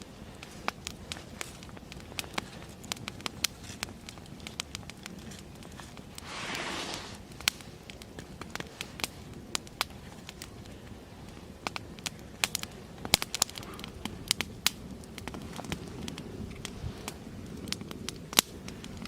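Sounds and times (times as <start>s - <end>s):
wood fire crackling: 0.0s - 19.0s
hiss: 6.2s - 7.6s.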